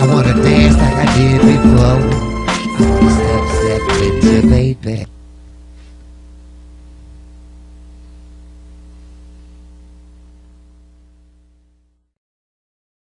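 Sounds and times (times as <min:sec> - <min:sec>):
electrical mains hum: 0:02.0 - 0:12.1
faint hiss: 0:07.8 - 0:10.6.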